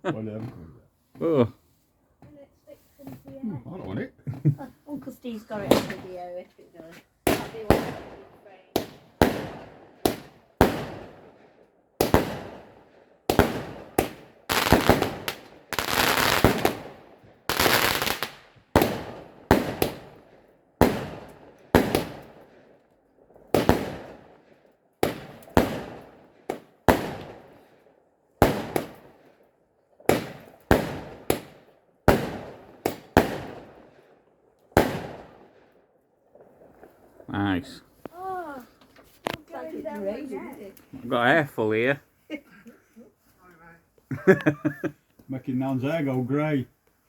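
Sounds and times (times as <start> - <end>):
fireworks crackling: 4.2 - 11.4, 12.0 - 22.6, 23.4 - 24.4, 25.0 - 27.6, 28.4 - 29.4, 30.0 - 34.0, 34.7 - 35.6, 36.2 - 42.3
fireworks bursting: 4.3 - 22.7, 23.4 - 24.4, 25.0 - 27.6, 28.4 - 29.2, 30.0 - 34.0, 34.7 - 35.6.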